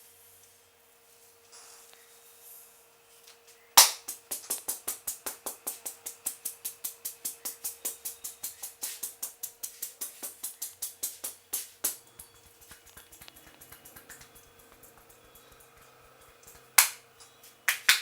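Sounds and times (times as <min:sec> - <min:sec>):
hands slapping on a head: 0:03.8 - 0:17.0, 0:17.7 - 0:18.0.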